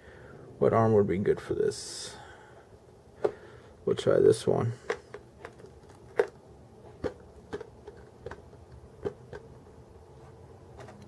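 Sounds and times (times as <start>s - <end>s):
plastic parts clicking and tapping: 4.8s - 6.4s.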